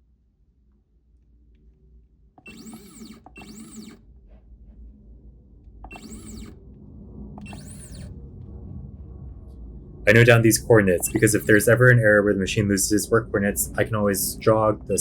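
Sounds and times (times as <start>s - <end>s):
stepper motors whining: 2.4s - 4.0s, 5.8s - 6.8s, 7.4s - 8.2s, 10.1s - 15.0s.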